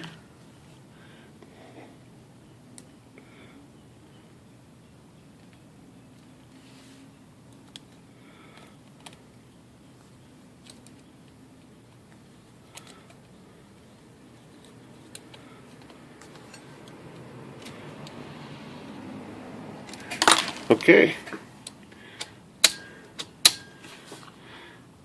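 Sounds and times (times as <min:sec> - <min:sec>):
faint steady hum: 0:00.0 - 0:25.0.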